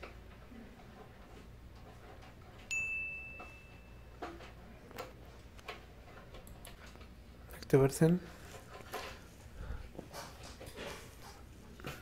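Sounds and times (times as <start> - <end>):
sharp metallic ring: 2.7 - 4.1.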